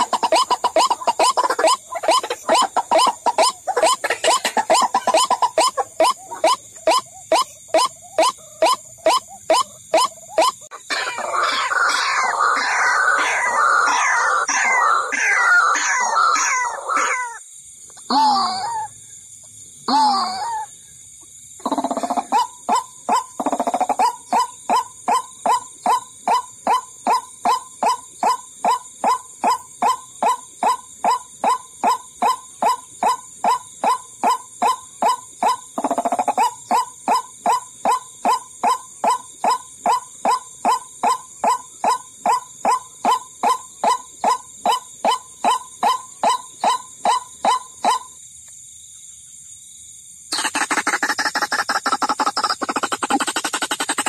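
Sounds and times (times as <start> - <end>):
waterhen calling: 0.0 - 17.4.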